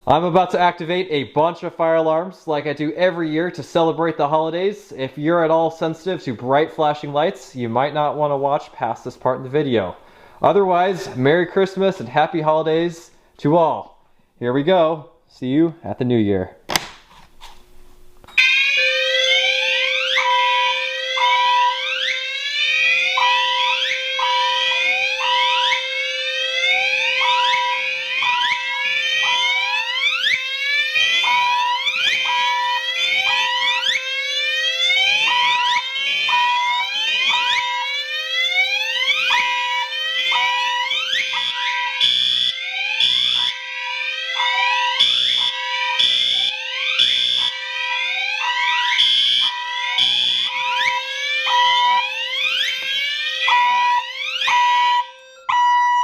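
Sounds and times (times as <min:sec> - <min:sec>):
steady alarm tone: 0:18.3 - 0:56.0
fire alarm whoop sweeps: 0:18.4 - 0:56.0
pulsing alarm: 0:18.4 - 0:56.0.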